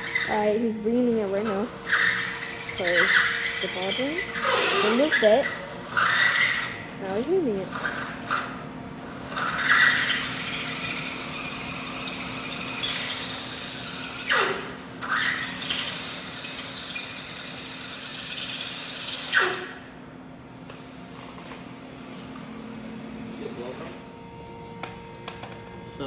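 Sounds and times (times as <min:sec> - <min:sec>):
electric drill reaming metal: 0:00.0 - 0:05.4
high-pitched cutting screech: 0:01.3 - 0:07.4, 0:09.4 - 0:19.8.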